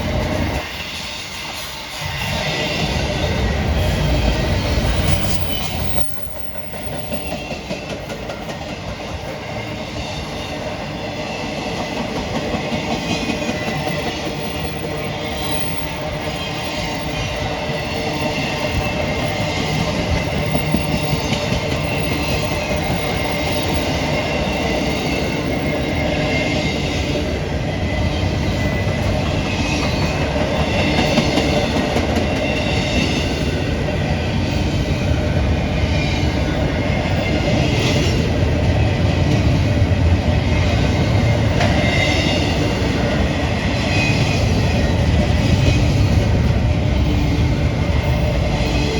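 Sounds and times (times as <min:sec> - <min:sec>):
train wheels rumbling on rails: 0:00.0 - 0:48.9
high wheel squeal: 0:01.6 - 0:07.5.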